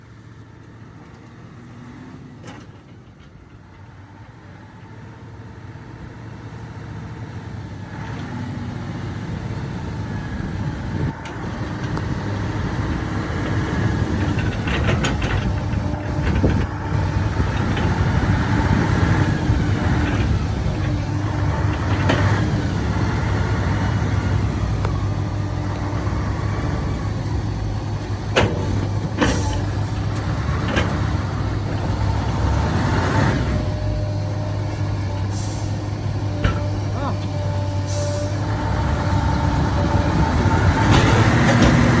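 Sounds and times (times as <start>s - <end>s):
heavy diesel engine running: 0.0s - 42.0s
metallic clanks and knocks: 28.0s - 31.8s.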